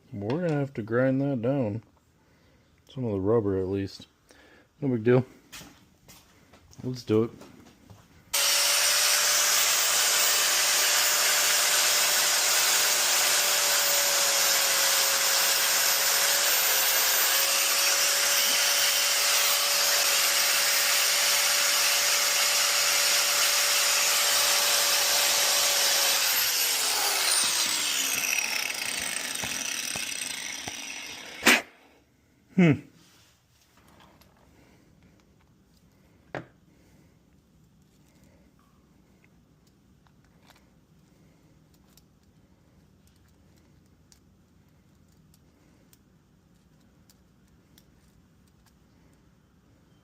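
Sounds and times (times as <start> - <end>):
power grinder grinding rubber: 8.4 - 31.8.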